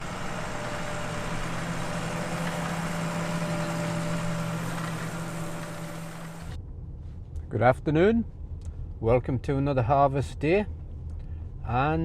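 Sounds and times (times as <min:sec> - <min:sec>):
combine harvester drone: 0:00.0 - 0:06.6
high mechanical whine: 0:00.0 - 0:06.6.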